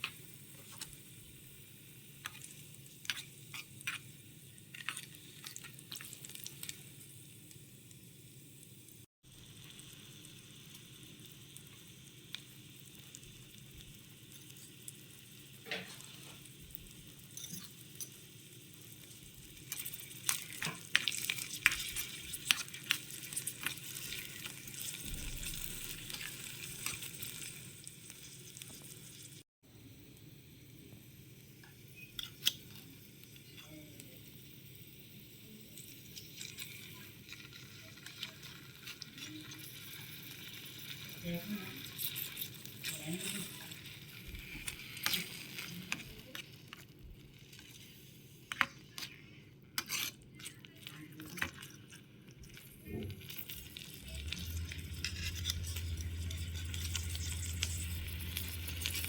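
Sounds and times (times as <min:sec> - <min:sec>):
small utensil stirring: 0:00.0 - 0:07.2, 0:11.5 - 0:29.4, 0:32.0 - 0:59.0
food sizzling in oil: 0:00.0 - 0:59.0.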